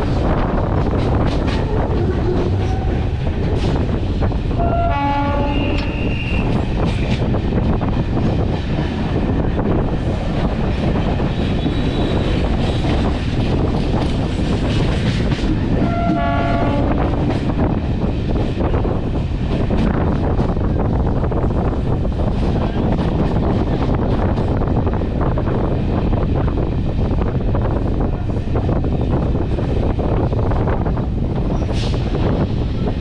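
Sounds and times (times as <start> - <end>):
train rumble and wheel clatter: 0.0 - 33.0
train horn blasts: 4.6 - 6.5, 15.8 - 17.2.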